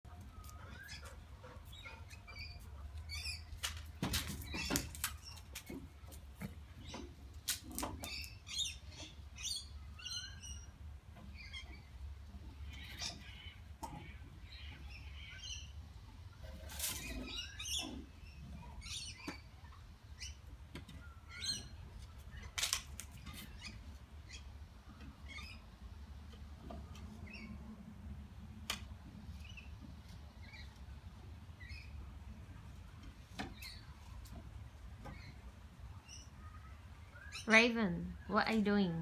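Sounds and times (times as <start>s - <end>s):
birds chirping: 29.2s - 39.0s.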